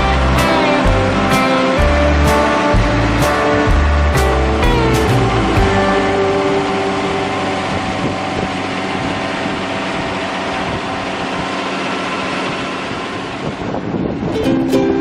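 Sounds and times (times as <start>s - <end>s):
plucked ukulele music: 0.0s - 8.5s, 14.2s - 15.0s
engine humming: 0.0s - 15.0s.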